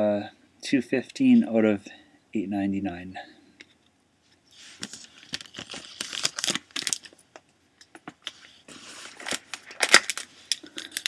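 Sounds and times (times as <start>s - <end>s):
packaging rustling: 4.5s - 11.0s.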